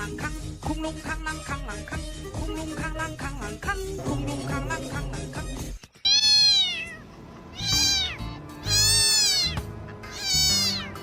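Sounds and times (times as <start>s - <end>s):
background music: 0.0s - 5.8s, 7.1s - 11.0s
cat meowing: 6.0s - 11.0s.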